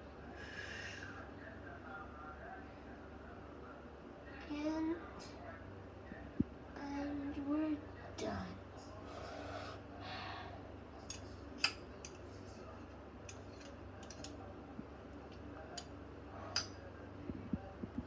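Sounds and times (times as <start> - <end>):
kitchen utensils clinking: 13.3 - 14.4.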